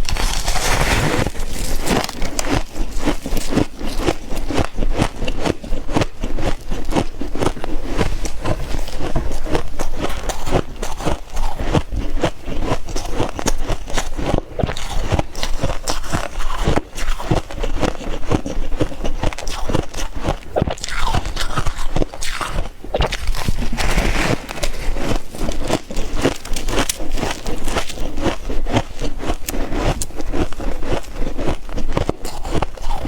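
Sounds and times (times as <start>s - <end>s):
chewing crisp frost crunches: 0.0s - 33.0s.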